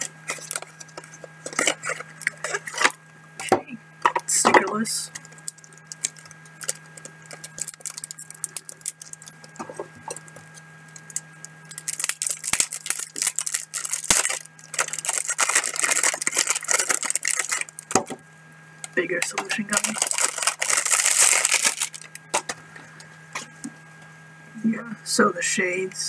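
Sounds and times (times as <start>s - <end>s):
packaging rustling: 0.0s - 3.0s, 5.1s - 18.0s, 19.2s - 22.6s
electrical hum: 0.0s - 26.0s.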